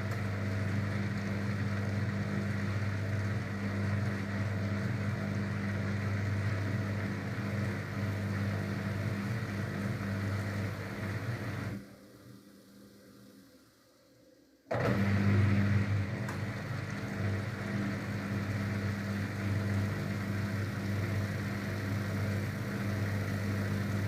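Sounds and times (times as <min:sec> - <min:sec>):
washing machine running: 0:00.0 - 0:11.8, 0:14.7 - 0:24.0.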